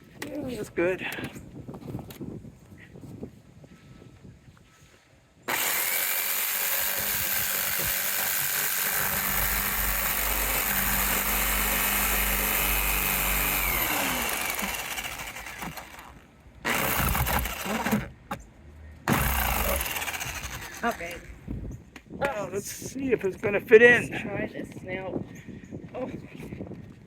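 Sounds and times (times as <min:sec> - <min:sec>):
electric jigsaw cutting metal: 0:05.5 - 0:18.1, 0:19.1 - 0:21.2.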